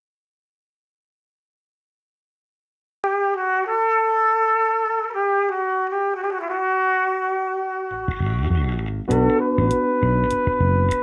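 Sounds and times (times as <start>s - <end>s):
brass-like lead melody: 3.0s - 11.0s
bass and rhythm accompaniment: 8.0s - 11.0s.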